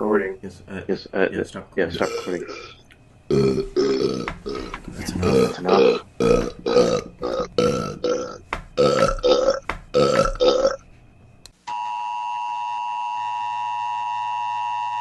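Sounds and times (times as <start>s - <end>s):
short belches: 1.9s - 10.8s
emergency broadcast attention tone: 11.7s - 15.0s.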